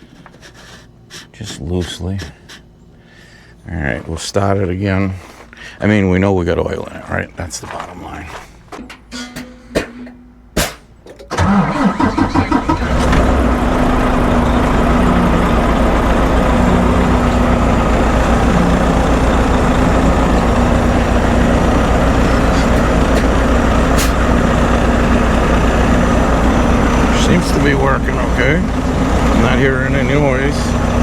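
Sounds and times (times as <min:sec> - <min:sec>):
diesel engine idling: 0:00.0 - 0:07.4, 0:10.2 - 0:31.0
diesel engine cranking: 0:08.3 - 0:31.0.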